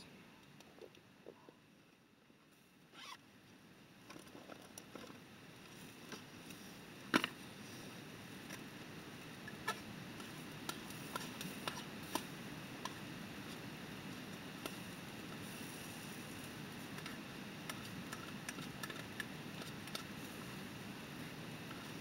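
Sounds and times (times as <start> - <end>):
meat sizzling on a grill: 14.6 - 17.0, 19.8 - 20.8
fat popping and crackling: 16.4 - 20.5.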